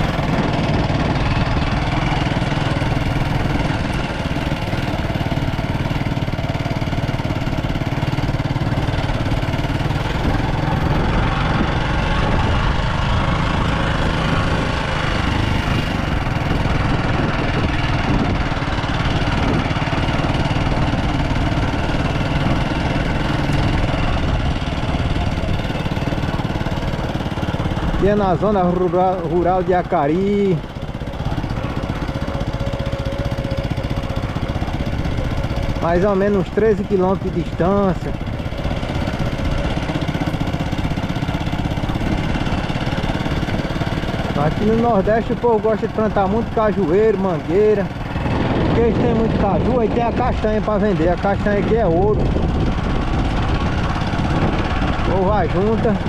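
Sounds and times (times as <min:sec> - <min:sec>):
wind noise: 0:00.0 - 0:04.4, 0:10.1 - 0:26.4, 0:48.0 - 0:56.0
road noise: 0:00.0 - 0:56.0
vehicle engine running: 0:00.0 - 0:56.0.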